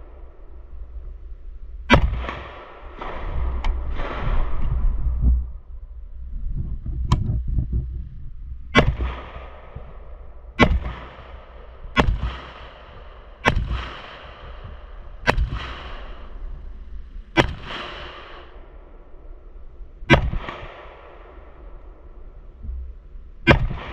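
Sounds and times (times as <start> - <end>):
gunshots with ringing echo: 1.9 - 5.6, 8.8 - 19.5, 20.1 - 22.4, 23.5 - 23.9.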